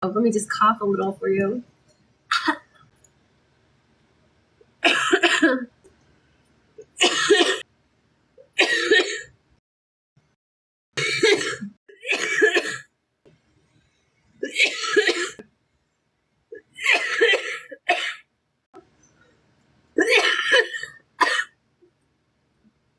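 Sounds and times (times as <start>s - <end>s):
girl coughing: 2.3s - 2.7s, 4.8s - 5.7s, 6.9s - 7.6s, 8.6s - 9.3s, 11.0s - 12.8s, 14.4s - 15.4s, 16.6s - 18.2s, 20.0s - 21.5s.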